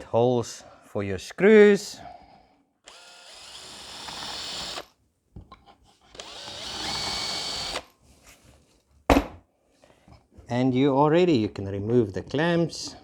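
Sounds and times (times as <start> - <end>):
power drill boring into wood: 2.8 - 4.9, 6.1 - 7.9.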